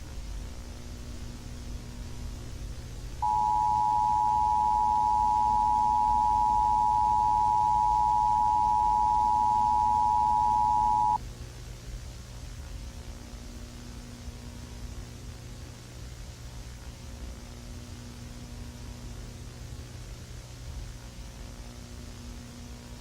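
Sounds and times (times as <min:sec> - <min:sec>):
low hum and hiss: 0:00.0 - 0:23.0
two-tone attention signal: 0:03.2 - 0:11.2.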